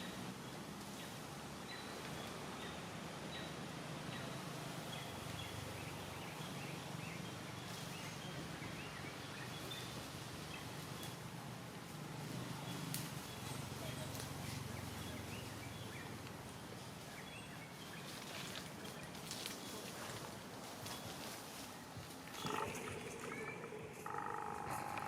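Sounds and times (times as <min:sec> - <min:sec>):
low hum: 0:22.4 - 0:25.0.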